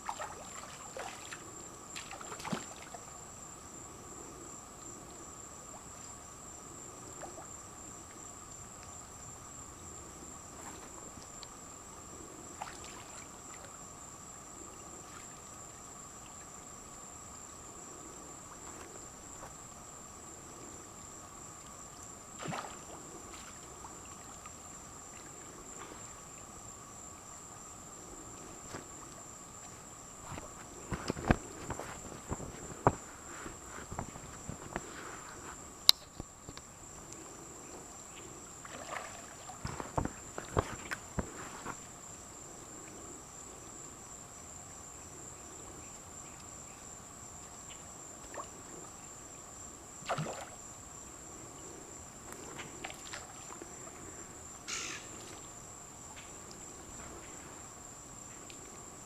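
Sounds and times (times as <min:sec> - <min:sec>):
high-pitched insect chorus: 0:00.0 - 0:59.0
faint knocks or splashes: 0:02.0 - 0:03.0, 0:22.4 - 0:24.3, 0:38.6 - 0:41.8, 0:50.0 - 0:50.6.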